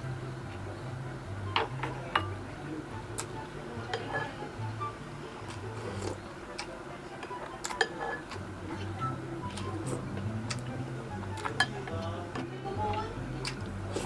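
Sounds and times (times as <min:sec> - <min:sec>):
low background hum: 0:00.0 - 0:14.0
utensils clinking on plates: 0:01.5 - 0:02.4, 0:03.2 - 0:04.6, 0:05.4 - 0:14.0.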